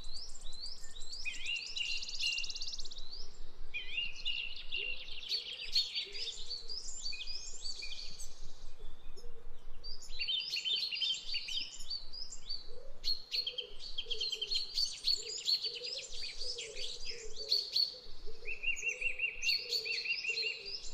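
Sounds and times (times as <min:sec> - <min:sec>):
birds chirping and trilling: 0:00.0 - 0:20.9.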